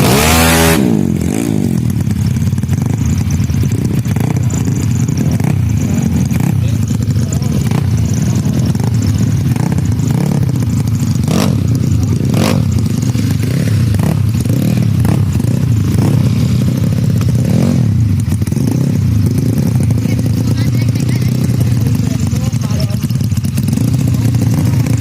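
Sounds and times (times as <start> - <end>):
scooter engines revving: 0.0 - 25.0
people's voices: 4.3 - 10.6, 11.3 - 13.7, 19.5 - 23.4.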